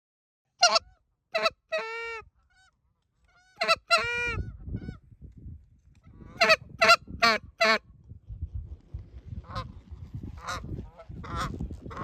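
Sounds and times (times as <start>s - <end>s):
geese honking: 0.6s - 4.4s.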